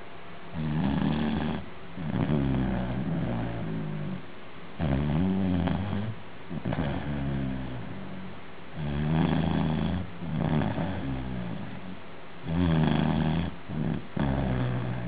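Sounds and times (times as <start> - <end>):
dog snoring: 0.5 - 15.0.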